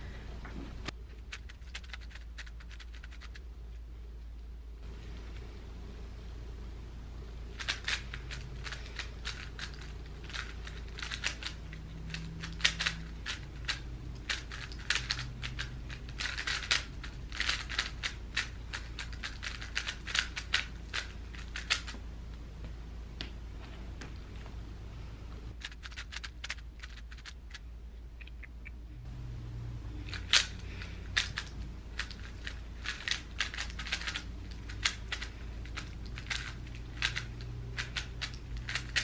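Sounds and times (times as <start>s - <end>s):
puzzle cube plastic clicks: 1.2s - 3.4s, 7.5s - 21.9s, 25.6s - 27.6s, 30.1s - 39.0s.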